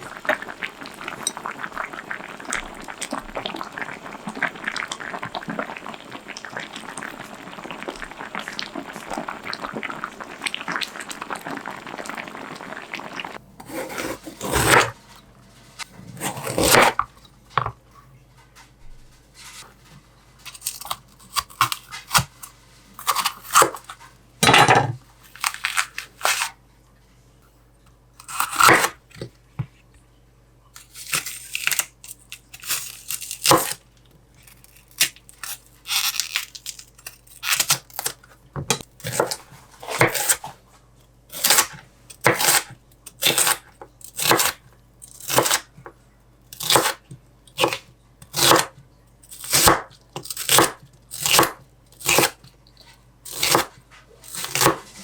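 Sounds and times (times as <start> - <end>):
food crackling in a pan: 0.0 - 13.4, 30.9 - 38.3
rustling and tearing: 34.5 - 38.1.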